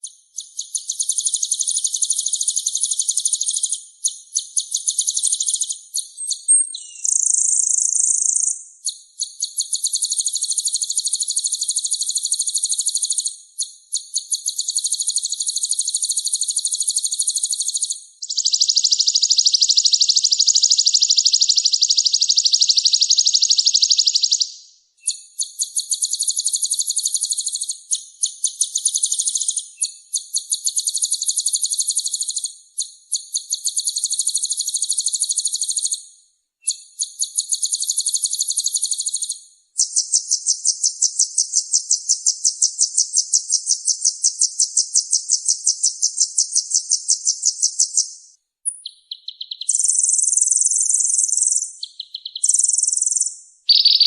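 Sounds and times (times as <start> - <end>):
harsh buzzy bird calls: 14.0 - 24.4, 49.4 - 54.0.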